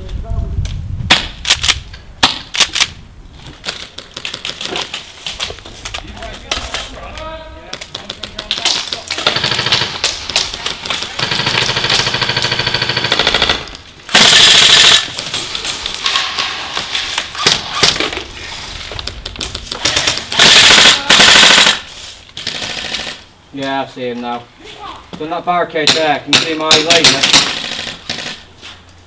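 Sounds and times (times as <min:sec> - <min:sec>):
airsoft guns firing bursts: 0:07.7 - 0:15.2, 0:19.7 - 0:23.3, 0:25.8 - 0:28.5.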